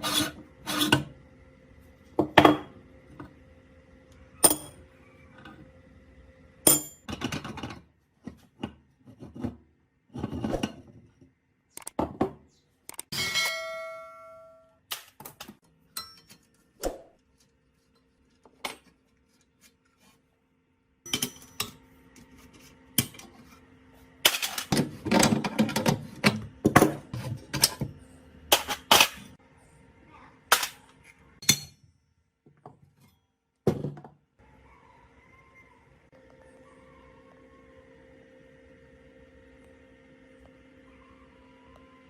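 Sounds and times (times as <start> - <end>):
metal grinder parts knocking and clanking: 24.2 - 27.9, 28.5 - 29.4, 30.5 - 31.8.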